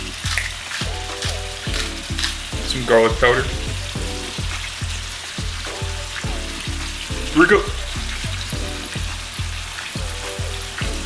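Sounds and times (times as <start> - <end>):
meat sizzling in a frying pan: 0.0 - 11.0
music with deep bass beat: 0.0 - 11.0.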